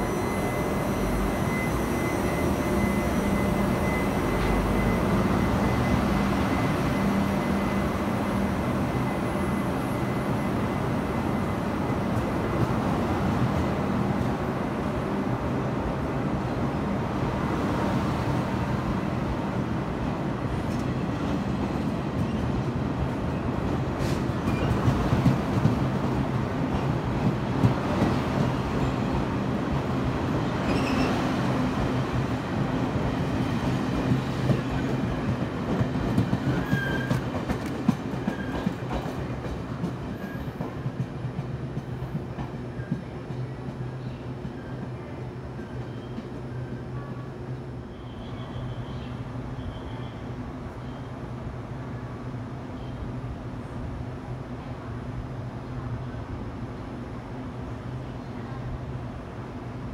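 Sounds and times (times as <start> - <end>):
train rolling past: 0.0 - 59.9.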